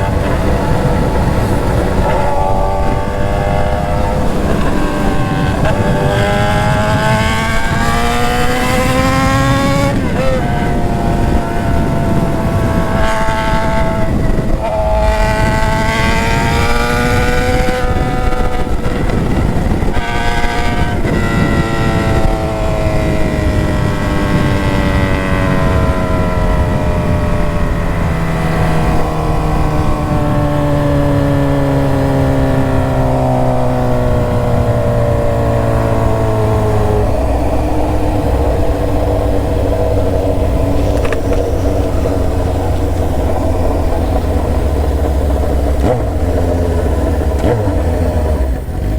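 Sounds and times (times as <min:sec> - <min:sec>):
motorcycle engine revving: 0:00.0 - 0:48.9
wind rush on microphone: 0:00.0 - 0:48.9.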